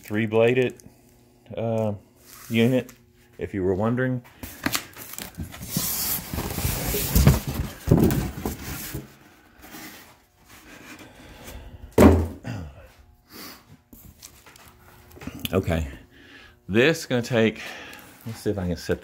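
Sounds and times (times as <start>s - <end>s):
cardboard scraping and rustling: 5.1s - 10.1s
loud thump: 12.0s - 12.4s.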